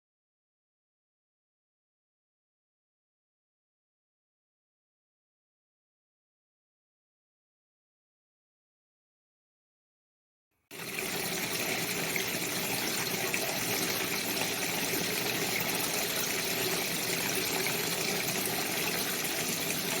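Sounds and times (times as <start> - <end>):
water gushing into washing machine: 10.7 - 20.0.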